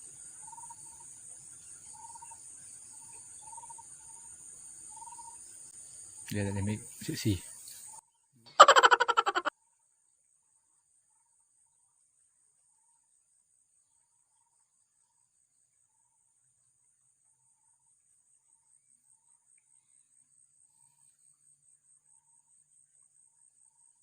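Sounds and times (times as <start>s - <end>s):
high insect chorus pulsing: 0.0s - 8.0s, 8.6s - 9.5s.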